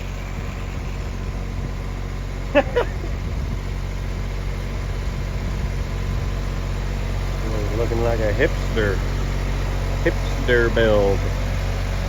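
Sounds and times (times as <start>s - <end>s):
engine idling: 0.0s - 12.0s.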